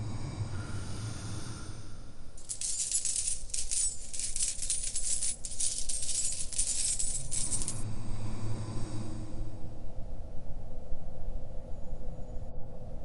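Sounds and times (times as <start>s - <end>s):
metal coins jingling: 2.4s - 7.8s.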